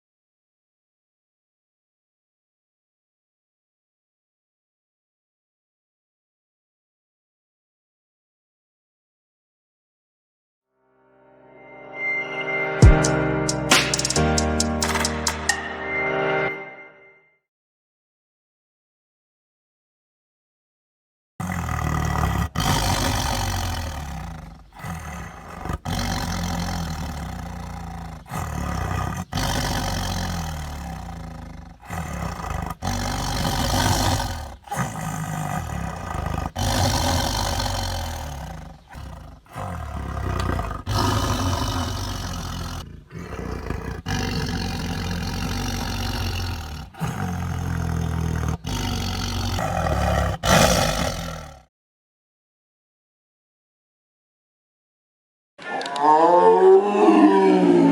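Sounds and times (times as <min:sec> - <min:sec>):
tiger growling and roaring: 0:21.4 - 0:51.7, 0:55.6 - 0:57.9.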